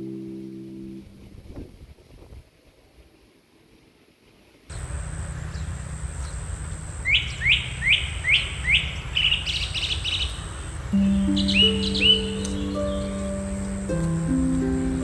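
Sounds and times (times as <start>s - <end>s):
soft plucked-string music: 0.0s - 1.6s, 10.8s - 15.0s
low outdoor rumble: 4.7s - 15.0s
songbird whistling and chattering: 4.7s - 15.0s.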